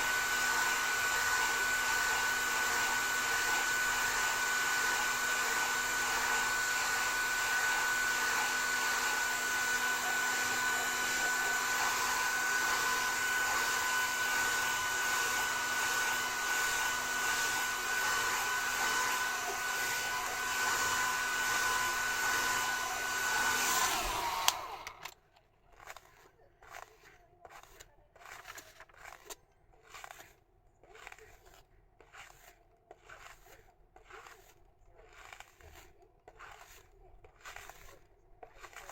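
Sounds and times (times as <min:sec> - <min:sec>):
hair dryer whining: 0:00.0 - 0:25.2
hair dryer switch click: 0:23.6 - 0:25.2.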